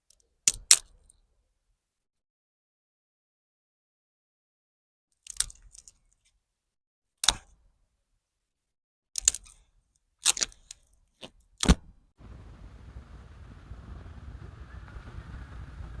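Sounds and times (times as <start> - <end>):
steady rushing noise: 12.2 - 16.0.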